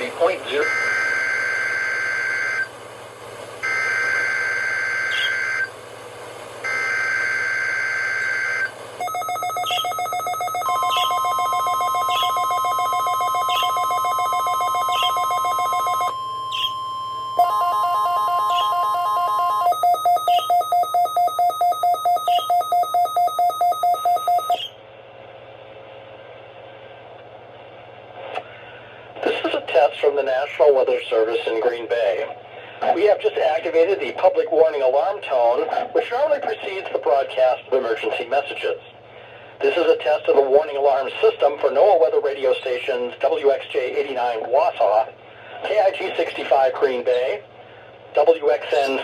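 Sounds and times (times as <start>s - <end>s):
steady warning alarm tone: 0.0s - 2.8s, 3.6s - 5.8s, 6.6s - 24.8s
electronic beeping: 3.6s - 5.7s, 6.7s - 24.8s
screeching digital data tone: 3.6s - 5.7s, 6.7s - 24.8s.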